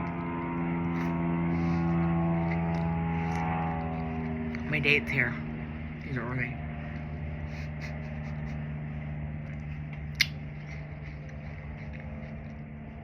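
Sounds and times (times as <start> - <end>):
steady low hum: 0.0 - 13.0
wet mouth clicks while eating: 10.1 - 10.4.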